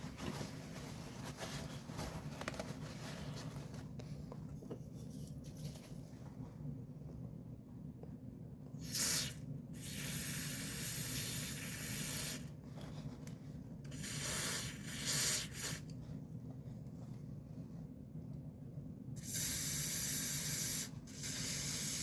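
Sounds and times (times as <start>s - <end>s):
aerosol spray hissing: 8.8s - 12.4s, 13.9s - 15.8s, 19.2s - 22.0s.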